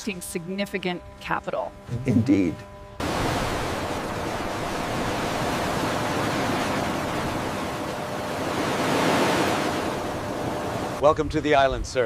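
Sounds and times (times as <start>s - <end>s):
wind: 0.5s - 12.0s
ocean surf: 3.0s - 11.0s.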